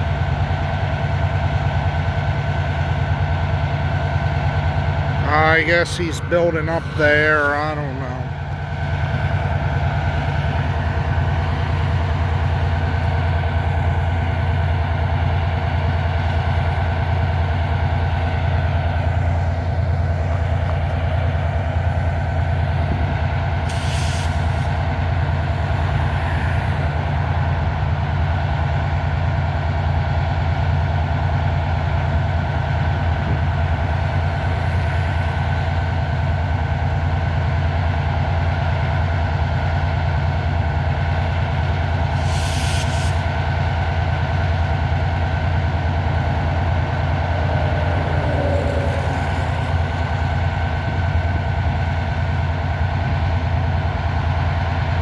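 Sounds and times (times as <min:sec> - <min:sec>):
diesel locomotive idling: 0:00.0 - 0:55.0
air hiss: 0:23.6 - 0:25.0, 0:42.0 - 0:50.7.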